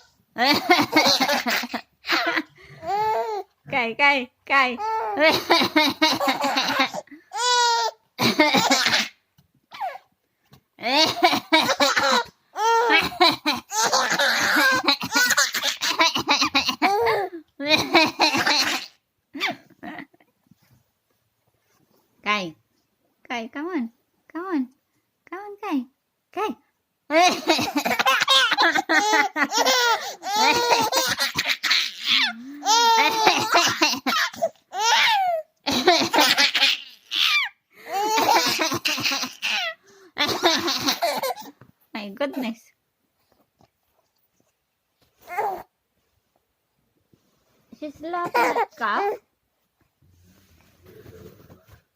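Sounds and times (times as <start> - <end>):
baby laughing: 0.4 - 3.4, 4.8 - 10.0, 10.8 - 20.0, 27.1 - 41.5, 48.2 - 48.8.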